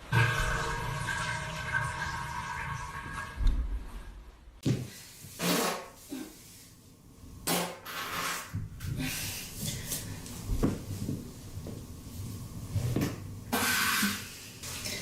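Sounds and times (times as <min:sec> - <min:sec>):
person farting: 0:05.4 - 0:06.0, 0:07.4 - 0:08.6.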